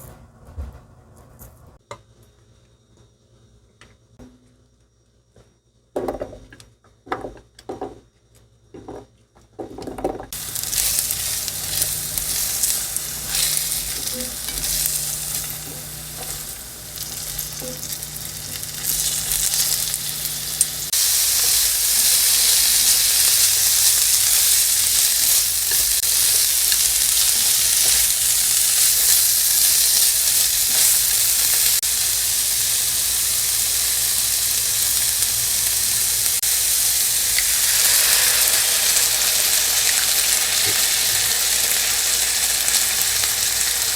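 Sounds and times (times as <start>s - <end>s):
food sizzling in a frying pan: 10.3s - 43.9s.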